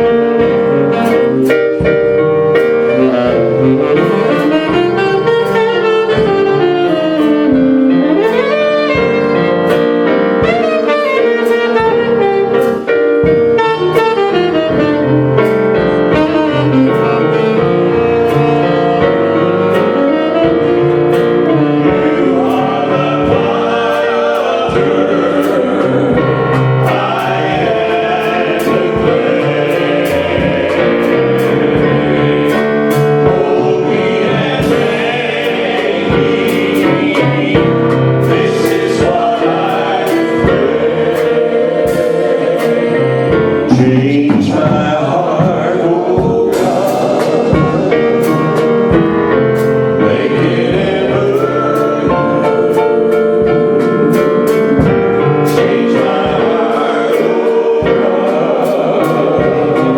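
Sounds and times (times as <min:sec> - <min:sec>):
saxophone solo: 0:00.0 - 0:22.6
band holding a chord: 0:00.0 - 0:49.0.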